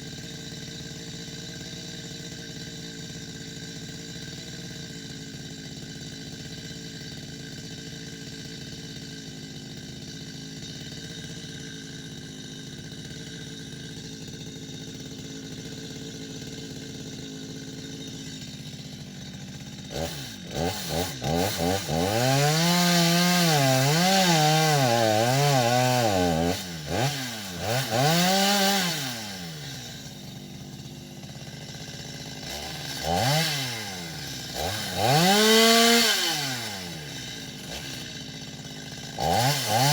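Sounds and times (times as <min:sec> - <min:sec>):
chainsaw engine idling and revving: 0:00.0 - 0:39.9.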